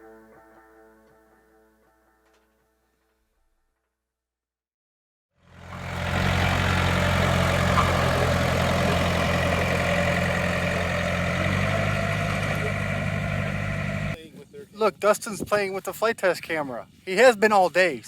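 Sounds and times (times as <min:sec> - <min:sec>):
engine running: 0:05.4 - 0:14.2.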